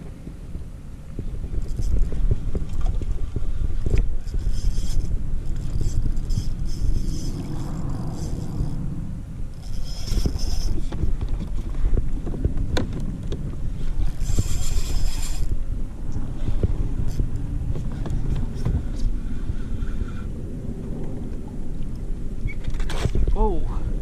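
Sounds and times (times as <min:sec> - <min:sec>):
wind rumbling on microphone: 0:00.0 - 0:24.0
fishing reel whirring: 0:01.6 - 0:11.8, 0:13.7 - 0:15.7, 0:16.4 - 0:20.3.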